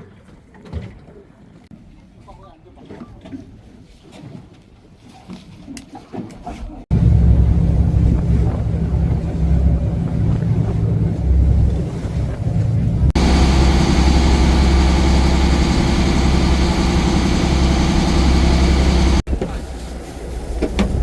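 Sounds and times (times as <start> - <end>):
boat engine humming: 6.9 - 19.3
rushing noise: 6.9 - 19.3.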